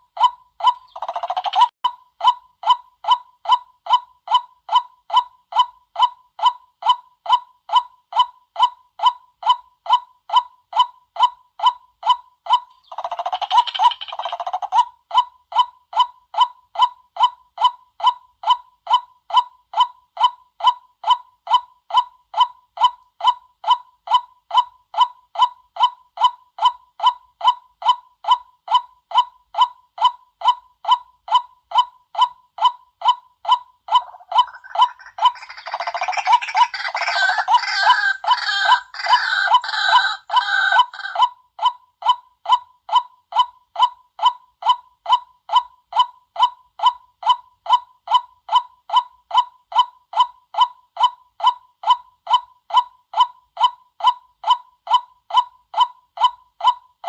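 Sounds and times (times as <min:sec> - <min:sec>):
waterhen calling kwak: 0:33.9 - 0:41.3.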